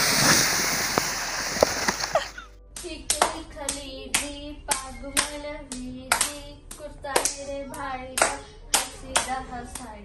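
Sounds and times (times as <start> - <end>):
rhythmic handclaps: 2.8 - 10.0.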